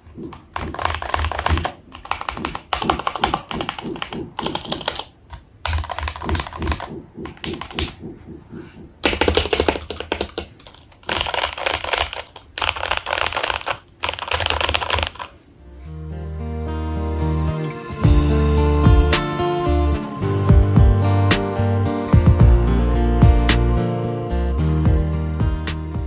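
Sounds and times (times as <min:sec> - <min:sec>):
fast mechanical keyboard typing: 0:00.0 - 0:08.4, 0:09.0 - 0:15.5.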